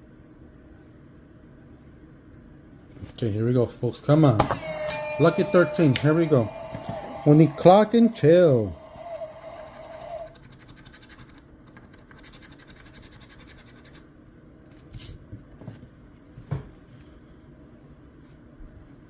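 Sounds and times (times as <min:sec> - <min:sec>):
brief steady tone: 0:04.5 - 0:08.8
lottery ticket being scratched: 0:04.7 - 0:14.1.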